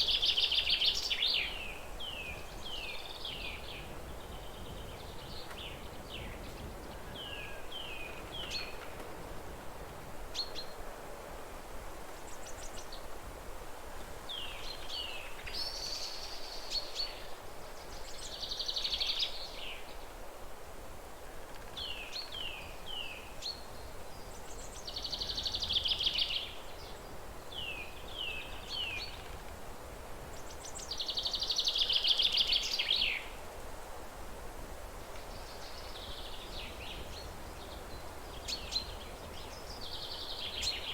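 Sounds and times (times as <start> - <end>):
songbird singing: 0.0 - 9.0, 21.8 - 29.5, 30.2 - 33.4, 35.1 - 40.9
background hiss: 0.0 - 40.9.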